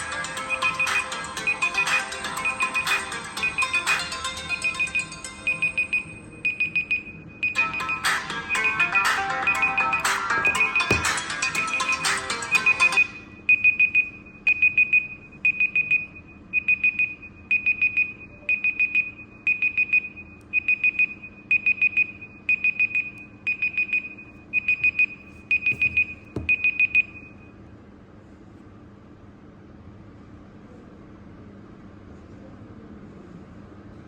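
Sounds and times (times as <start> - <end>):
phone timer alarm beeping: 0.0 - 27.4
soft knock: 10.4 - 11.2, 25.7 - 26.6.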